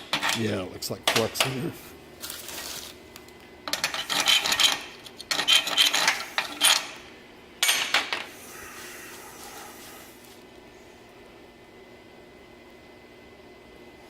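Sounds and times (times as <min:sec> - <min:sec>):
metal scraping a weld: 0:03.7 - 0:07.0.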